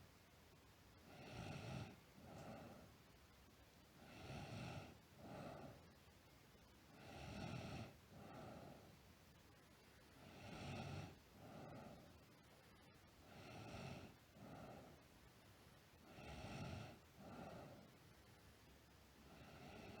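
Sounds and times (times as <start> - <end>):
girl snoring faintly: 19.2 - 20.0.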